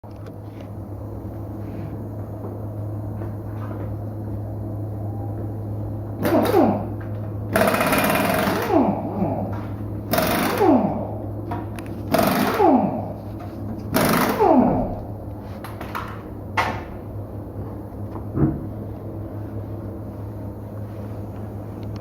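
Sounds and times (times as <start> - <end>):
low machine hum: 0.0 - 22.0
pneumatic impact wrench rattling: 6.2 - 6.9, 7.5 - 9.3, 10.1 - 11.1, 12.1 - 13.1, 13.9 - 15.1.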